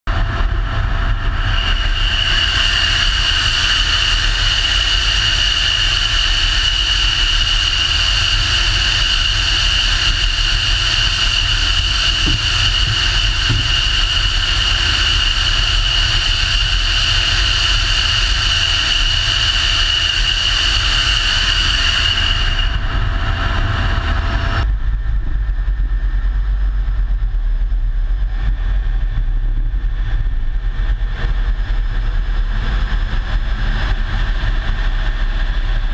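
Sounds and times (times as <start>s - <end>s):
high even whine: 0.1s - 26.9s
vehicle low rumble: 9.7s - 18.9s, 21.4s - 35.9s.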